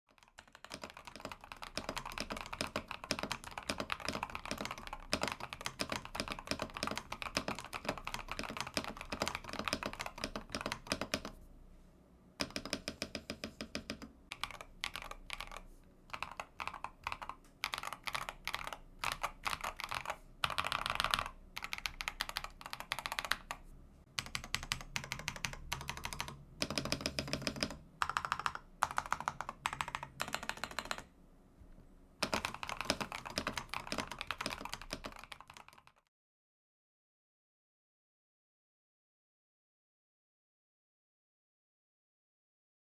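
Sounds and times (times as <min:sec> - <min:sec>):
mechanical keyboard keys clacking: 0:00.2 - 0:11.3, 0:12.4 - 0:23.6, 0:24.2 - 0:31.0, 0:32.2 - 0:36.0.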